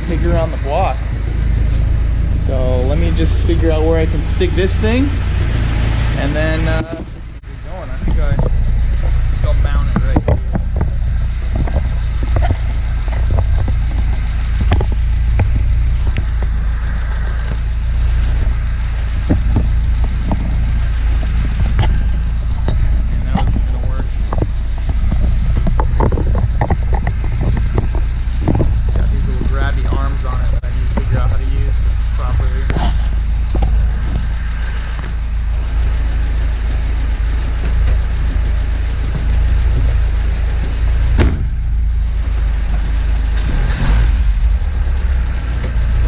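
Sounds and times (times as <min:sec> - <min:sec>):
car engine running: 0:00.0 - 0:46.0.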